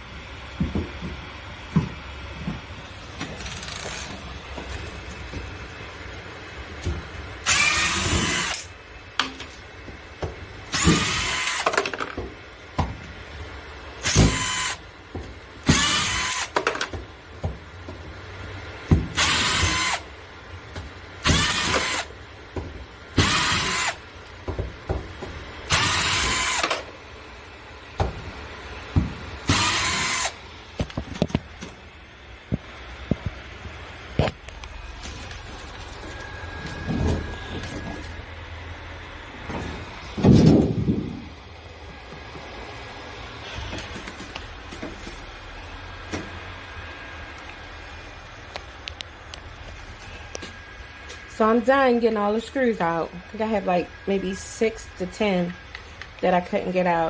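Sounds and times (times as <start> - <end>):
power drill running in bursts: 7.4 - 8.8, 10.7 - 11.8, 14.0 - 14.8, 15.6 - 16.7, 19.2 - 20.1, 21.2 - 22.2, 23.1 - 24.1, 25.6 - 26.9, 29.4 - 30.4.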